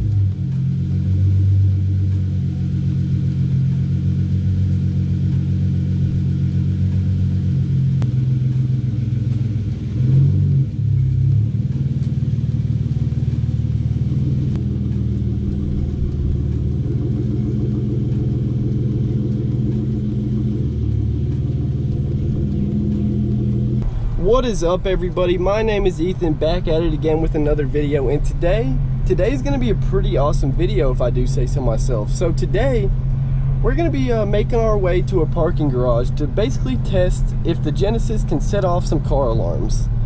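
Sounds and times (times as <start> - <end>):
car exhaust idling: 0.0 - 40.0
engine throttle blip: 0.0 - 40.0.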